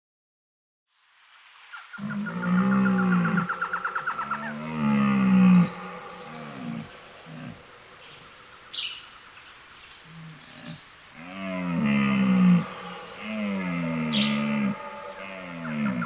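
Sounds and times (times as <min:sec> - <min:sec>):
low animal calls: 0:01.9 - 0:16.0.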